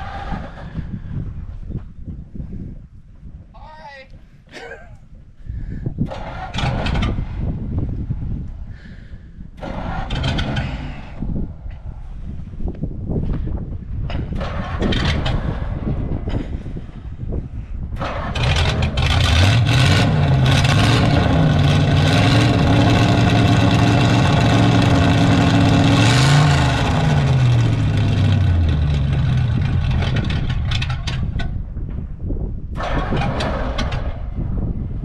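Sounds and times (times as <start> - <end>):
large vehicle engine revving: 6.0 - 7.6, 9.6 - 11.3, 14.3 - 16.2, 18.0 - 31.6, 32.7 - 34.5.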